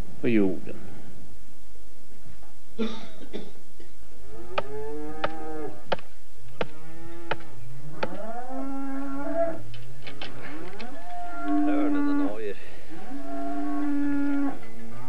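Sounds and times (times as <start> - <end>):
cows mooing: 4.2 - 5.8, 6.7 - 9.6, 10.2 - 15.0.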